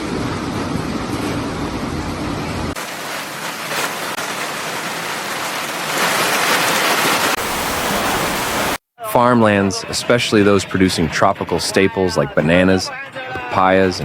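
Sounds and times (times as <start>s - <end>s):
heavy rain pouring: 0.0s - 8.8s.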